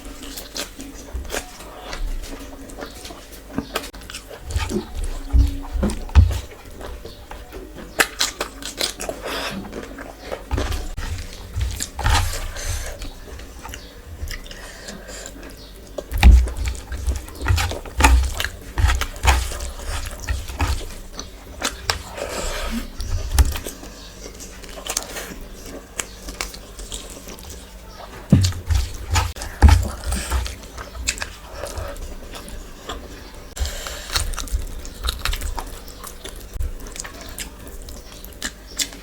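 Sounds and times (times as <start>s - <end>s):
chewing and biting food: 0.0s - 39.0s
sharp crunches: 10.5s - 15.4s, 16.0s - 23.8s, 28.2s - 32.5s
low thumps: 28.3s - 31.2s.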